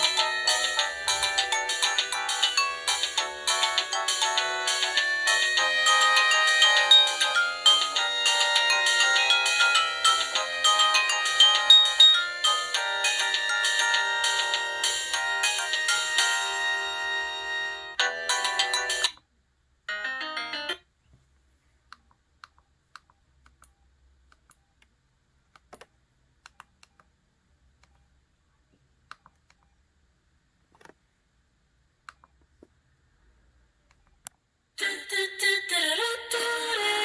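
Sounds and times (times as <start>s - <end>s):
phone ringtone melody: 0.0s - 19.2s, 19.9s - 20.8s.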